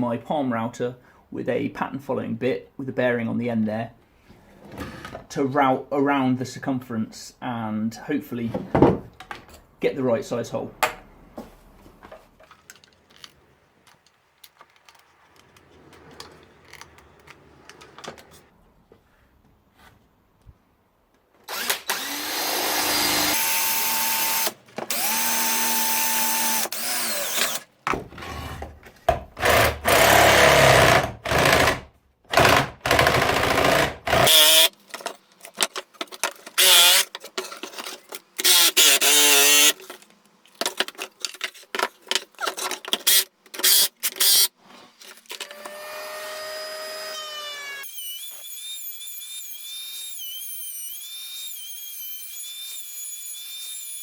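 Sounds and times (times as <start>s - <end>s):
power drill drilling through wood: 21.5s - 27.6s, 29.4s - 34.7s, 36.6s - 37.1s, 38.4s - 39.8s, 43.0s - 44.5s, 45.4s - 54.0s
power tool cutting wood bursts: 21.5s - 27.7s, 29.4s - 34.8s, 36.5s - 37.1s, 38.4s - 39.9s, 43.0s - 44.6s, 45.4s - 54.0s.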